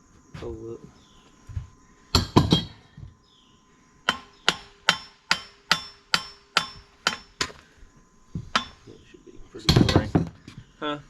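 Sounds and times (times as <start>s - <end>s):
hammer striking steel pin: 4.1s - 7.5s, 8.5s - 8.8s.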